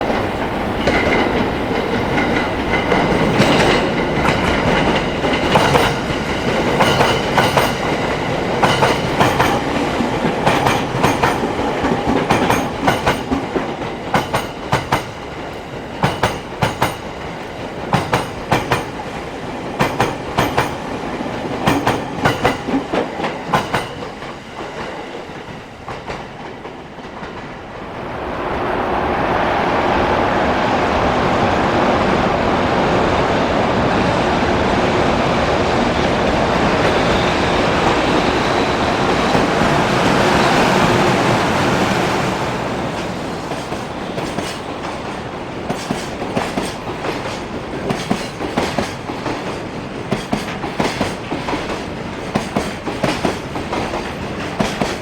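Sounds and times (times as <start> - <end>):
train wheels clacking over rail joints: 0.0 - 27.5, 43.0 - 55.0
train rolling rush: 0.0 - 55.0.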